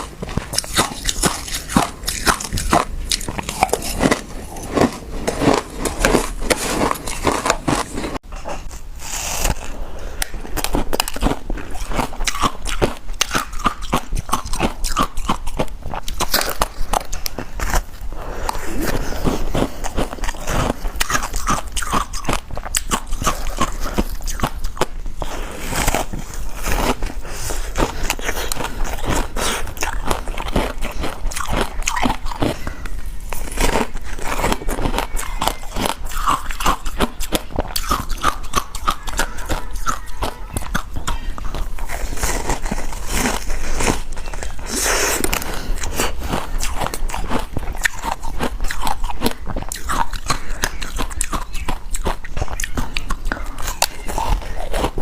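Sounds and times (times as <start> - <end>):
crunching and chewing frozen fruit: 0.0 - 55.0.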